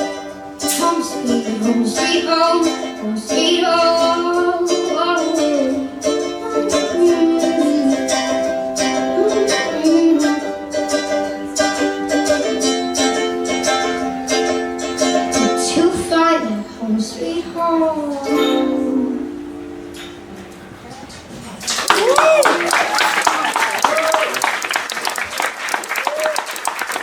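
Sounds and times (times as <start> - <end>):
person singing: 0.0 - 11.0, 15.2 - 19.6
ukulele strumming: 0.0 - 24.0.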